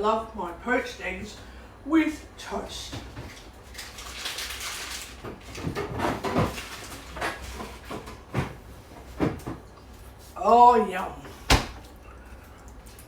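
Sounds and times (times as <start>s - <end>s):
kitchen knocks and clatters: 2.9s - 9.7s, 11.5s - 11.9s.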